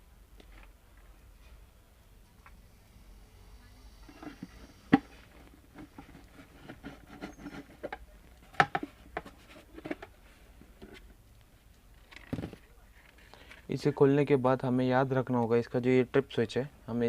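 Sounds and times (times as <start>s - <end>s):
plastic housing clicks and scraping: 4.1s - 11.1s.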